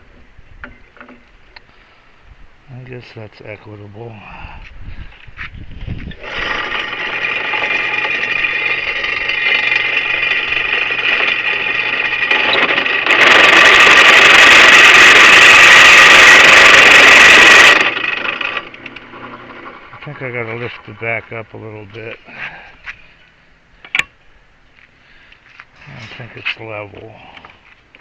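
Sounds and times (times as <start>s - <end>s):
electric drill cutting: 6.2s - 19.8s.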